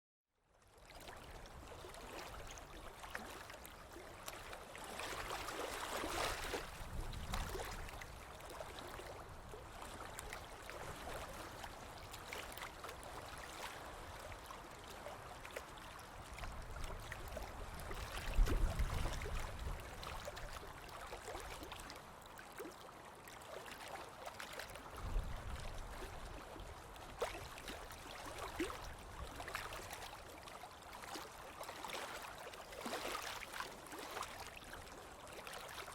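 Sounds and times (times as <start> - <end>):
lake water lapping: 0.8 - 35.9.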